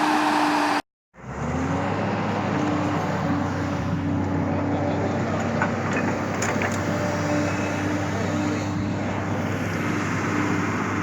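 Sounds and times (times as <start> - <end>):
excavator diesel engine running: 0.0 - 11.0.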